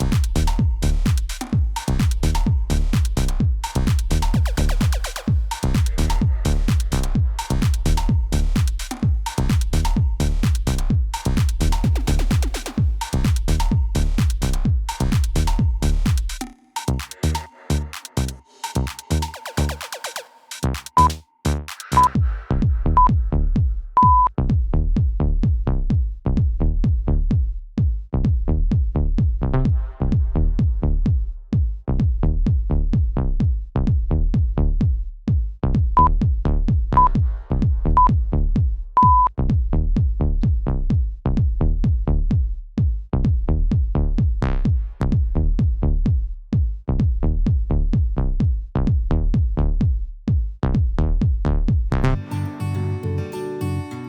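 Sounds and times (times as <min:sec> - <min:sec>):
electronic dance music: 0:00.0 - 0:15.5, 0:16.1 - 0:22.2
interval timer beeps: 0:20.9 - 0:21.2, 0:21.9 - 0:22.2, 0:24.0 - 0:24.3, 0:37.0 - 0:37.2, 0:39.0 - 0:39.3.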